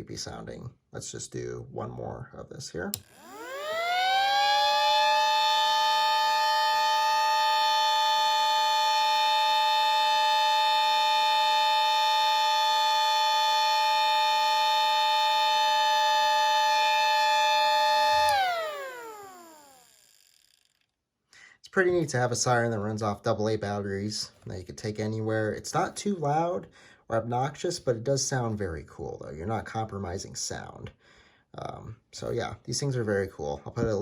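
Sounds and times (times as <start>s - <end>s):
miniature air raid siren wailing: 3.1s - 20.0s.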